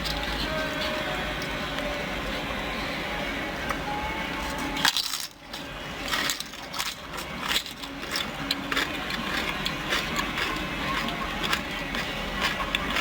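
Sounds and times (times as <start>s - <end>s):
chewing crunchy corn chips: 4.8s - 13.0s.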